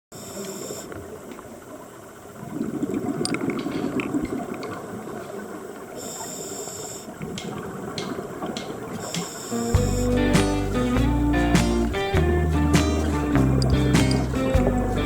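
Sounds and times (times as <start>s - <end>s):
exhaled bubbles gushing underwater: 2.2s - 6.0s
regulator inhalation hiss: 9.0s - 10.2s.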